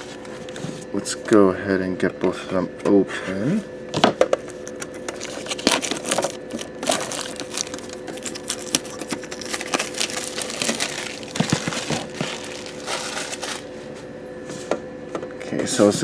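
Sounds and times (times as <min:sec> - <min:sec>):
faint steady hum: 0:00.0 - 0:16.0
plastic wrap crinkling: 0:05.1 - 0:13.8.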